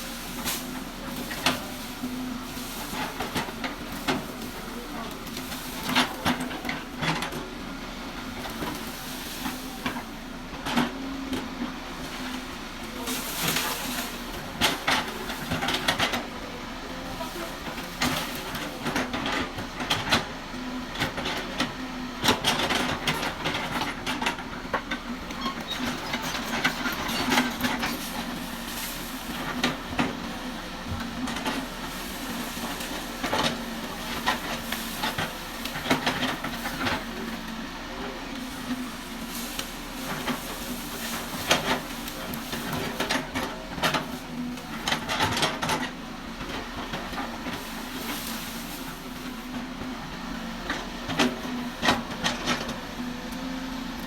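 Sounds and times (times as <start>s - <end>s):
excavator engine hum: 0.0s - 54.0s.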